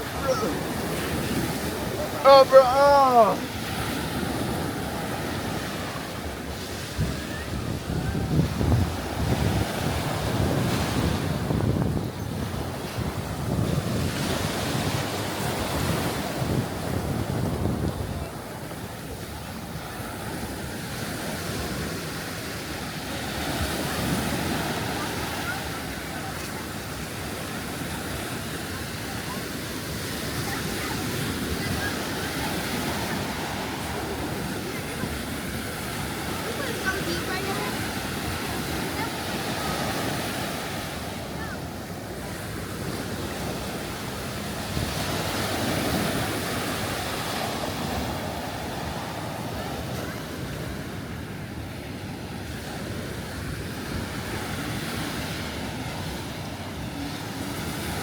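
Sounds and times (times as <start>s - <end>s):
surf washing onto beach: 0.0s - 58.0s
wind on microphone: 3.8s - 19.8s.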